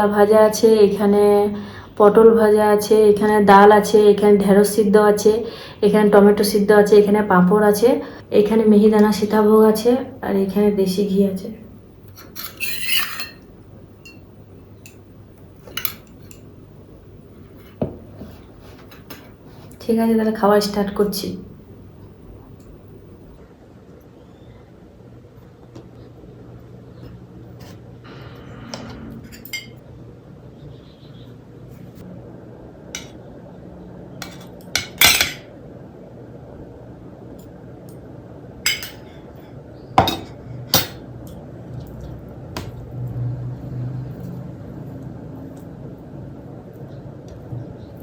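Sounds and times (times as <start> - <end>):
cutlery clinking on plates: 12.2 - 13.4, 34.2 - 35.5, 38.7 - 39.2, 40.0 - 41.0.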